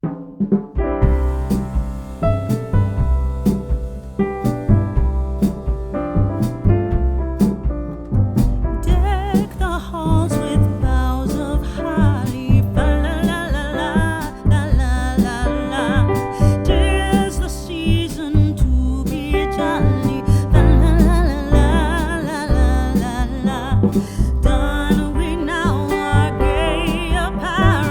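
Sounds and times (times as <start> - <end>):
pop song with piano and bass: 0.8 - 27.9
singing voice with vibrato: 8.9 - 27.9.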